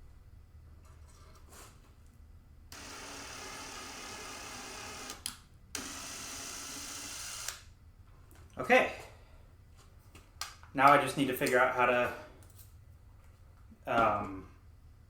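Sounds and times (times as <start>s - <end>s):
electric drill running: 2.7s - 7.7s.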